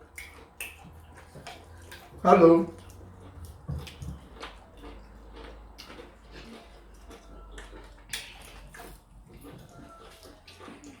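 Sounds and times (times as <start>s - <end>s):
faint clicks and taps: 2.8s - 11.0s.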